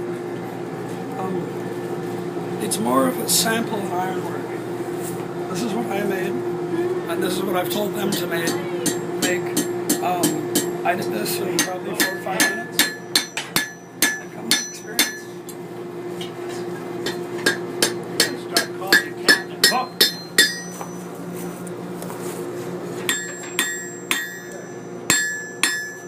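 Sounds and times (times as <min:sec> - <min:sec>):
steady low hum: 0:00.0 - 0:26.0
hammer striking anvil: 0:08.1 - 0:10.8, 0:11.6 - 0:15.3, 0:17.0 - 0:21.0, 0:23.1 - 0:26.0.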